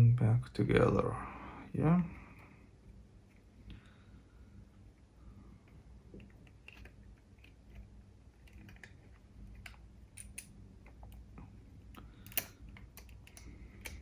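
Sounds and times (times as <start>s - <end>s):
low steady hum: 0.0s - 14.0s
small plastic parts clicking: 6.1s - 11.3s, 11.9s - 14.0s.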